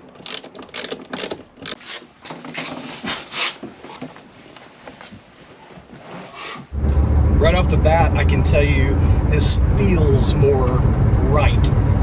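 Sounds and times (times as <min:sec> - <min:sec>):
hand tool clicking and scraping: 0:00.0 - 0:03.6.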